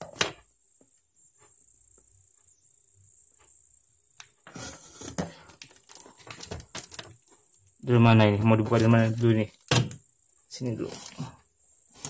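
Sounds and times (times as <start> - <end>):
faint high-pitched whine: 0.0 - 12.0
cardboard rustling and scraping: 4.4 - 7.1, 8.4 - 9.4, 10.7 - 12.0.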